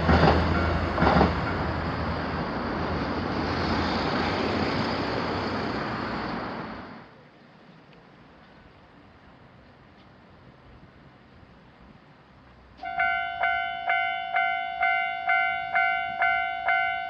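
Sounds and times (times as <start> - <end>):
train wheels clacking over rail joints: 0.0 - 1.9
train rumble and rush: 0.0 - 17.0.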